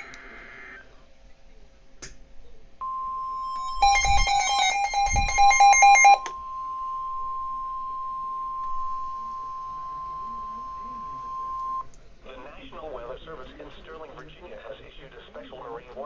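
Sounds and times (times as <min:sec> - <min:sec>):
rapidly switching electronic beeps: 0:03.0 - 0:07.7
steady alert tone: 0:03.1 - 0:06.3.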